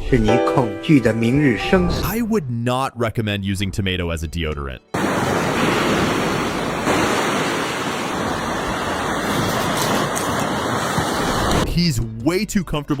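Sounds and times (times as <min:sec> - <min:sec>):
loud steady rushing noise: 0:05.0 - 0:11.6.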